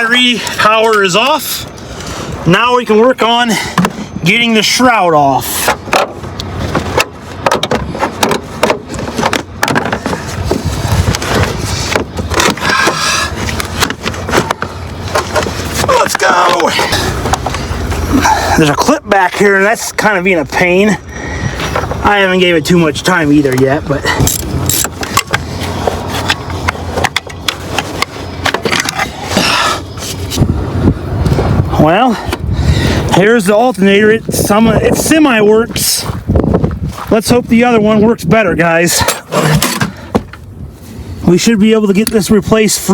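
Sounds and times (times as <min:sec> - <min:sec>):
wind rumble on microphone: 0:05.8 - 0:16.0, 0:19.9 - 0:38.8, 0:39.4 - 0:41.3
hand tools clicking and clattering: 0:23.5 - 0:30.3.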